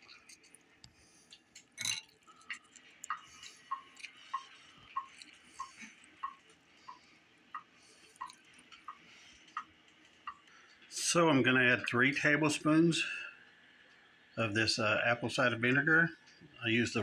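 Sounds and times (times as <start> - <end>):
juice dripping plinks: 0.0 - 11.2.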